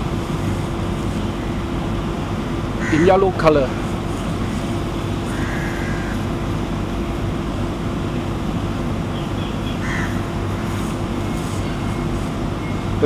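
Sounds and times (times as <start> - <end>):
low hum: 0.0 - 2.8.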